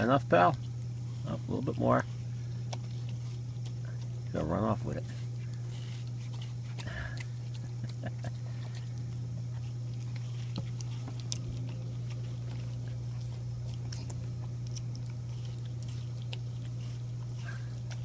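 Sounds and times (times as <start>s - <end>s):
dog chewing watermelon: 0.0s - 18.0s
steady low hum: 0.0s - 18.0s.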